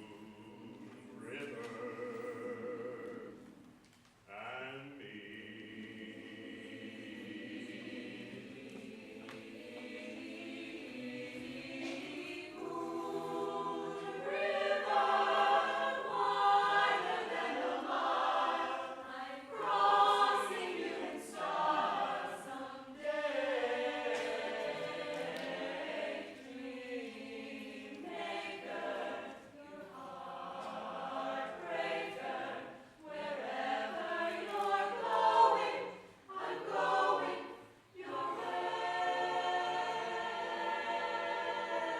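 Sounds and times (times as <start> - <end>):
vocal group singing a cappella: 0.0 - 41.9.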